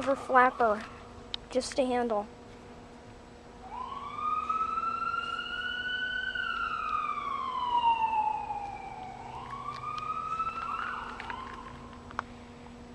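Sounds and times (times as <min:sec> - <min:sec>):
emergency vehicle siren wailing: 0:00.0 - 0:01.1, 0:03.6 - 0:12.1.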